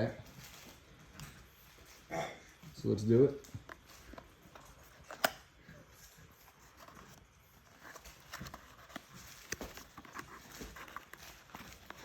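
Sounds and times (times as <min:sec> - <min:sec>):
packaging rustling: 0:03.4 - 0:12.0.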